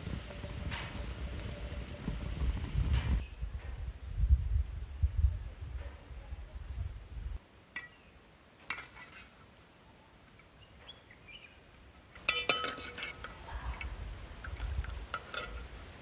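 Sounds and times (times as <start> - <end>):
metal cookware clinking: 8.7 - 9.4, 12.1 - 16.0.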